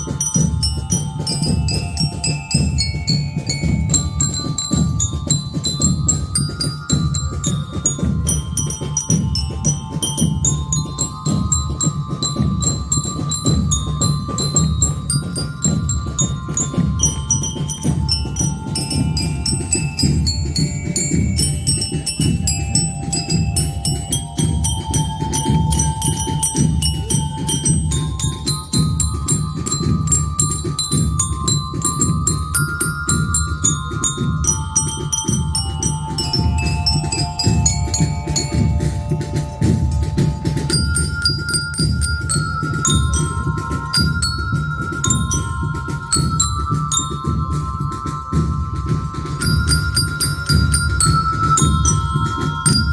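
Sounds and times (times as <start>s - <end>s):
bell lyres playing melody: 0.0s - 52.9s
marching drums beat: 0.0s - 52.9s.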